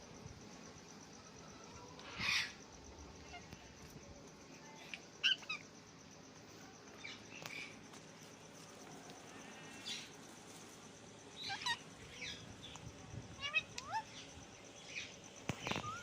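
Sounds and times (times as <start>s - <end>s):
faint background noise: 0.0s - 16.0s
parrot chirping: 11.4s - 12.4s, 13.4s - 14.2s.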